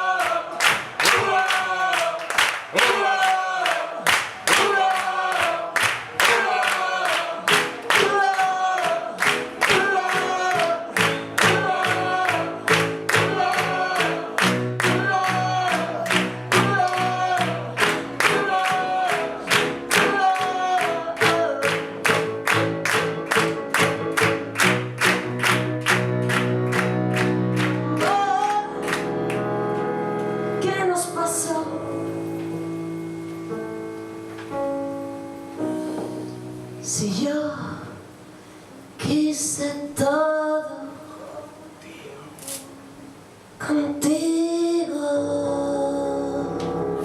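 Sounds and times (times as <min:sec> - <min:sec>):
wordless sung melody: 0:00.0 - 0:47.0
live band playing: 0:09.0 - 0:37.2.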